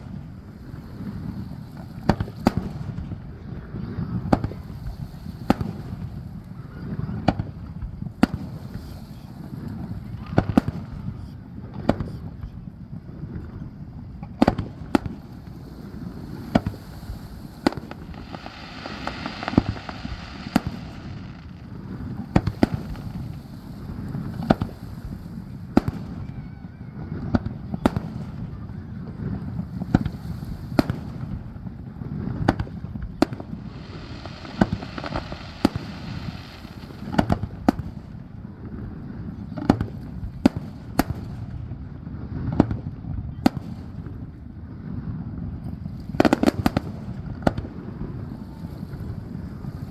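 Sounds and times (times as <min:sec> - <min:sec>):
fireworks crackling: 0:00.0 - 0:11.2, 0:13.3 - 0:41.6, 0:45.9 - 0:49.9
fireworks shells bursting: 0:15.5 - 0:25.2, 0:33.3 - 0:38.0.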